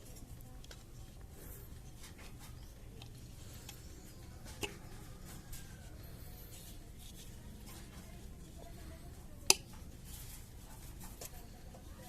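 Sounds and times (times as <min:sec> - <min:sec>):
scraping and tapping plastic parts: 0:00.0 - 0:12.0
steady low hum: 0:00.0 - 0:12.0.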